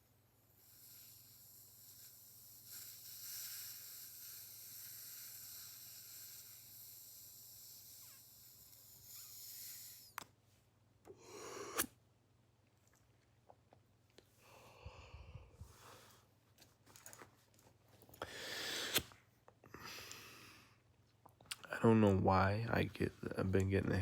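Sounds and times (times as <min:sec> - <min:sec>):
breathy hiss of vape inhale: 0:00.5 - 0:10.2, 0:11.2 - 0:11.9, 0:14.4 - 0:16.3, 0:18.2 - 0:20.8
quick breath: 0:11.1 - 0:11.9, 0:14.4 - 0:16.3, 0:18.2 - 0:20.7.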